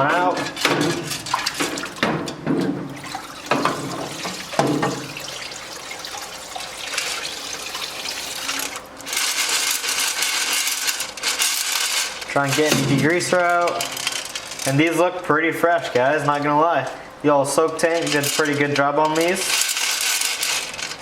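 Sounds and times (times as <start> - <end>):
liquid sloshing in a tank: 0.0 - 21.0
metal parts clinking: 8.5 - 14.7, 17.8 - 21.0.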